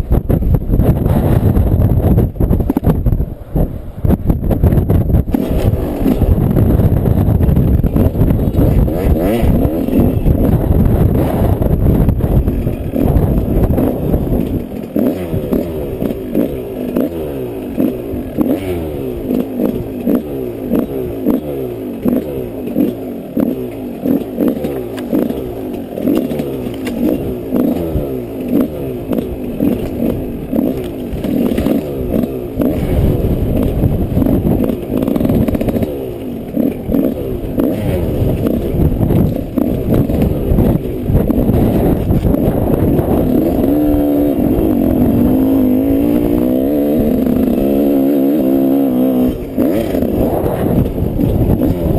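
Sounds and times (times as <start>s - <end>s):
heavy low rumble: 0.0s - 20.0s, 36.8s - 51.9s
motorcycle engine revving: 0.0s - 51.9s.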